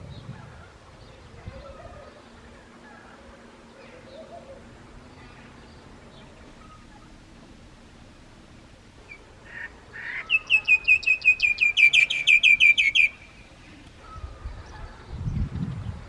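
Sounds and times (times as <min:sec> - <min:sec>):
myna calling: 0:09.1 - 0:15.0.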